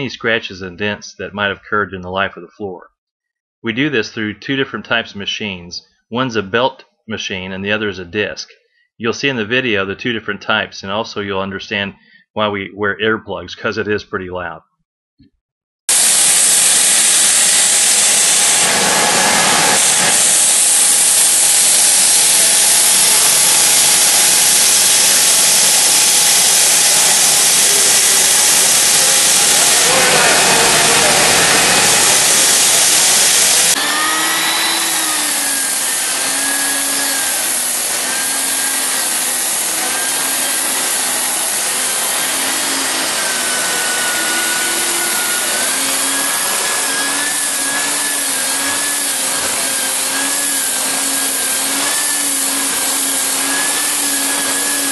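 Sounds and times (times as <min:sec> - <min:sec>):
floor sanding machine: 0:15.9 - 0:54.9
wavering motor whine: 0:15.9 - 0:54.9.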